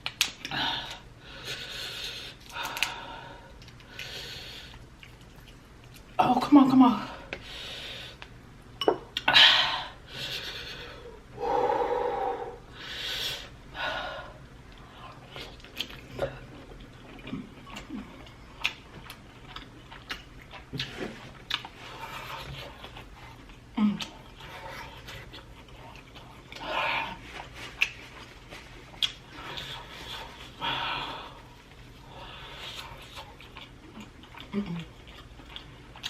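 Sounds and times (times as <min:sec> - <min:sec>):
wet chewing clicks and smacks: 0:04.7 - 0:06.2, 0:14.7 - 0:21.8, 0:27.7 - 0:29.8, 0:32.6 - 0:36.0
heavy breaths: 0:09.3 - 0:15.2, 0:29.3 - 0:33.0.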